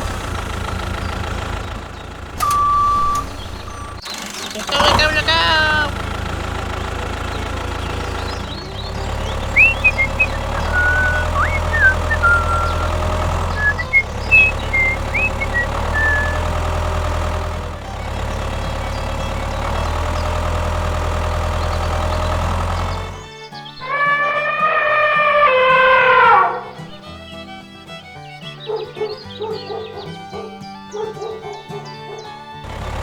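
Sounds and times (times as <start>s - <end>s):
small engine running: 0.0s - 33.0s
short high chirps: 9.5s - 16.5s.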